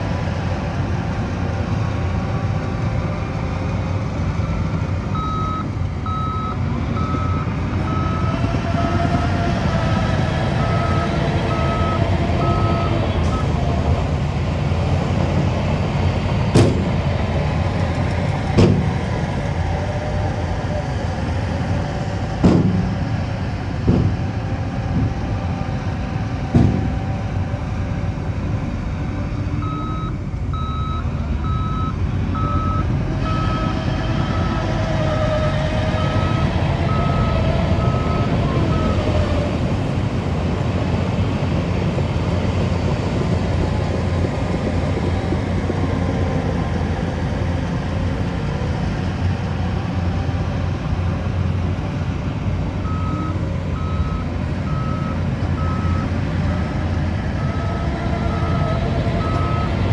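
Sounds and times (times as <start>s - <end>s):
diesel engine running: 0.0s - 59.9s
reversing alarm beeps: 5.2s - 8.4s, 10.6s - 13.6s, 29.6s - 33.5s, 52.9s - 56.1s, 57.4s - 59.8s
sharp knocks: 18.6s - 18.9s, 22.4s - 23.0s, 23.9s - 24.2s, 26.5s - 27.0s.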